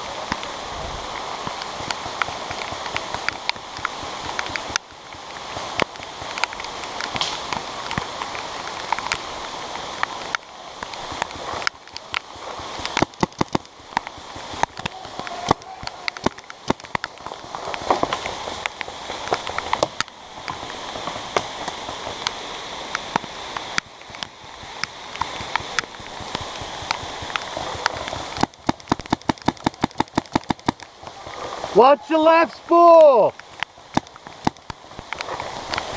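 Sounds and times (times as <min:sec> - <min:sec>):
rain hiss and patter: 0:00.0 - 0:35.9
paintball markers firing: 0:28.4 - 0:30.8.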